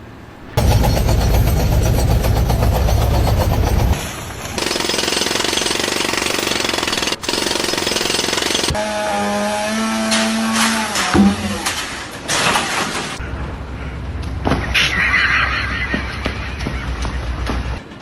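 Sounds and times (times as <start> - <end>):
jackhammer hammering: 0.6 - 4.0, 4.6 - 8.8.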